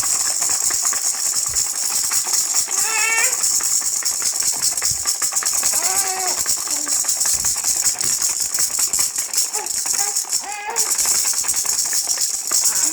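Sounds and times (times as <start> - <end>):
toy rattle shaken: 0.0 - 12.9
high-pitched voice-like calls: 2.8 - 3.4, 5.8 - 7.0, 9.6 - 11.0.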